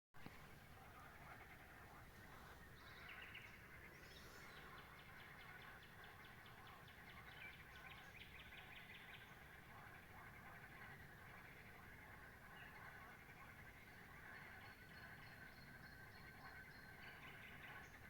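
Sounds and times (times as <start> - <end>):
faint birdsong: 0.2 - 18.0
low steady hiss: 0.2 - 18.0.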